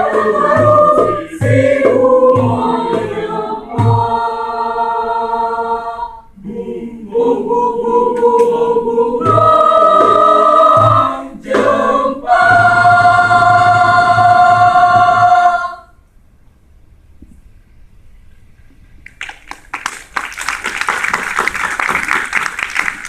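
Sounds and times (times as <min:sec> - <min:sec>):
choir singing: 0:00.0 - 0:16.0.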